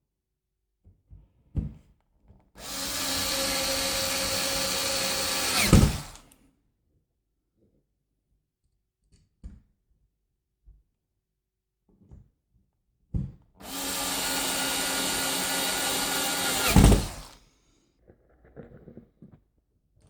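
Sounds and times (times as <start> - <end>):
power drill running: 2.6 - 6.4, 13.6 - 17.4.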